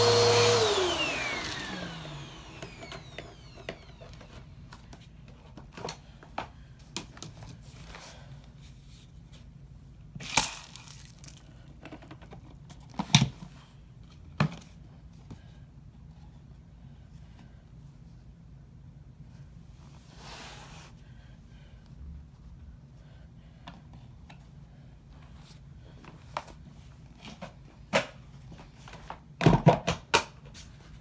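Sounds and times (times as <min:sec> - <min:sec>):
objects clicking and knocking: 0:10.2 - 0:13.4.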